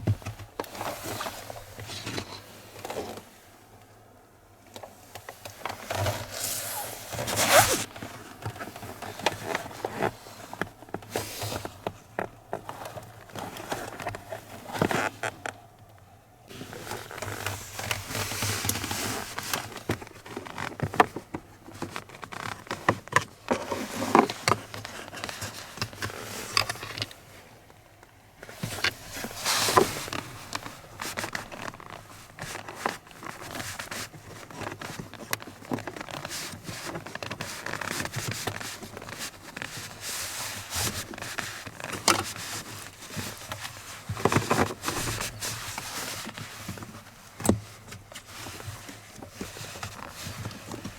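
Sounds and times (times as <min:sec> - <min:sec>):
scraping and rustling of plastic trim: 0:05.4 - 0:15.5.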